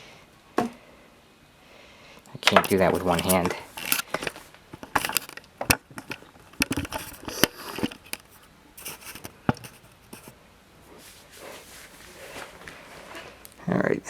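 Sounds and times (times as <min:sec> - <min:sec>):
cord and plug tapping: 0:02.4 - 0:09.8
twist tie rustling and clicking: 0:02.4 - 0:10.3.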